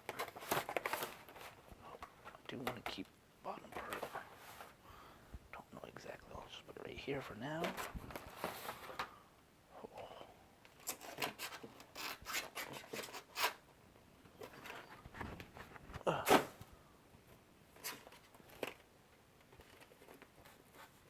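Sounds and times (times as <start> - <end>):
packaging rubbing and scraping: 10.8 - 13.6.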